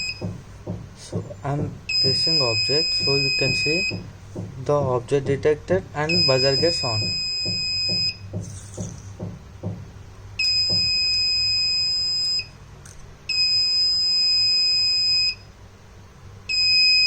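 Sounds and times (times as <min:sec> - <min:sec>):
alarm buzzer long beeps: 0:00.0 - 0:00.4, 0:01.9 - 0:04.2, 0:06.0 - 0:08.3, 0:10.4 - 0:12.6, 0:13.3 - 0:15.5, 0:16.5 - 0:17.0.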